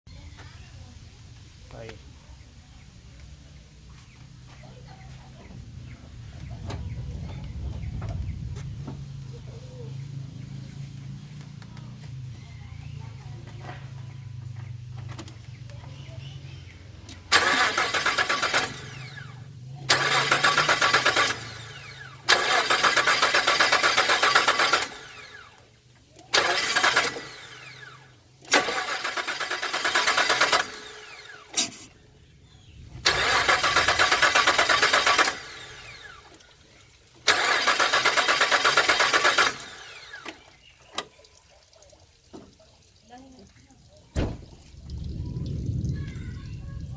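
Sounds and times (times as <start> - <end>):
car engine cranking on starter: 15.0 - 41.2.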